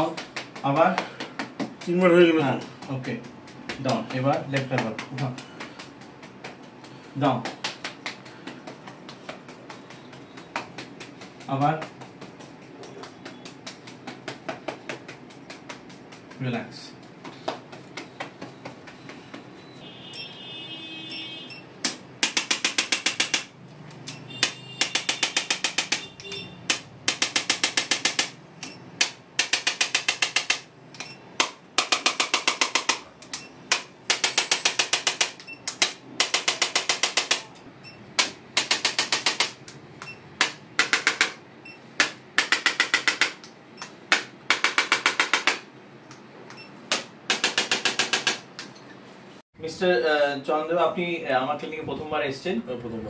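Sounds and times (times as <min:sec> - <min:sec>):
rapid mechanical clicks: 0:24.1 - 0:37.5, 0:38.2 - 0:39.8.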